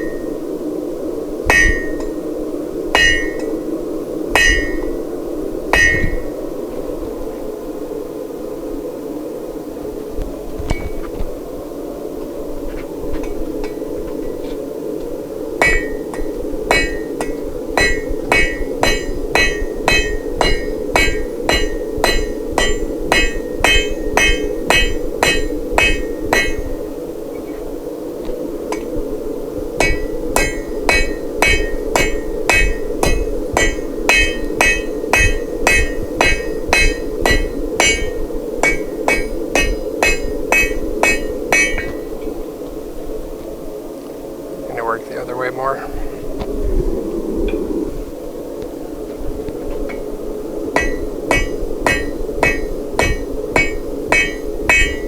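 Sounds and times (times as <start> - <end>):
steady drone: 0.0 - 7.9, 13.2 - 42.9
hammer ringing on anvil: 1.5 - 2.2, 3.0 - 3.6, 4.4 - 5.0, 5.8 - 6.3, 15.6 - 26.8, 29.8 - 42.2, 50.8 - 55.0.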